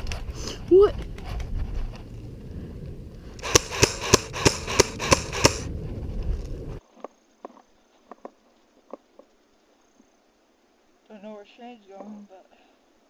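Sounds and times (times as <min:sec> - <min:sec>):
airsoft gun shots: 0:03.4 - 0:05.7.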